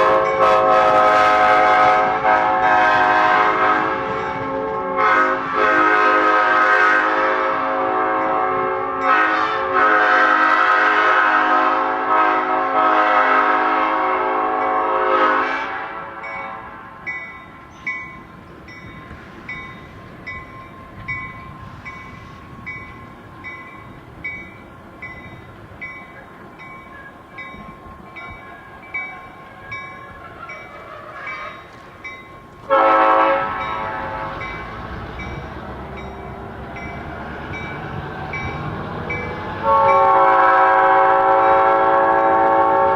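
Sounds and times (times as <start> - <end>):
air horn chord blast: 0.0 - 16.8, 32.7 - 34.7, 39.6 - 42.9.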